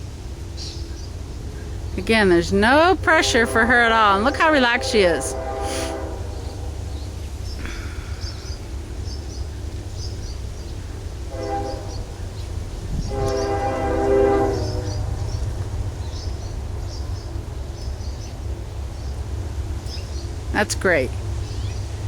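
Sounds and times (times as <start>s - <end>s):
steady low rumble: 0.0s - 22.0s
train horn blasts: 2.0s - 7.2s, 11.2s - 15.9s.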